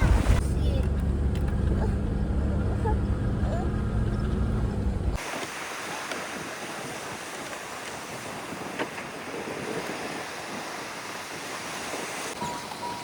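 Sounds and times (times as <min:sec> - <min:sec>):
sea surf waves: 0:05.2 - 0:13.0.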